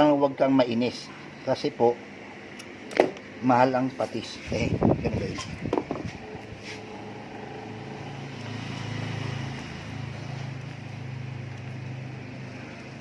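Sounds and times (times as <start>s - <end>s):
vehicle engine hum: 5.5s - 13.0s.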